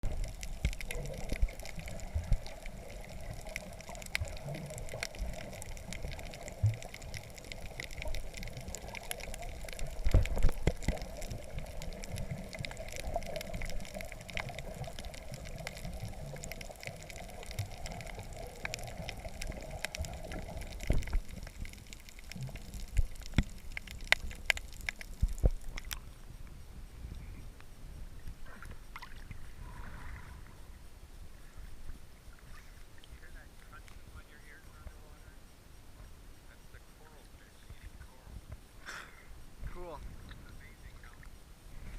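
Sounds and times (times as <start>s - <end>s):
water splashing and sloshing: 0.0s - 26.6s, 28.2s - 34.6s.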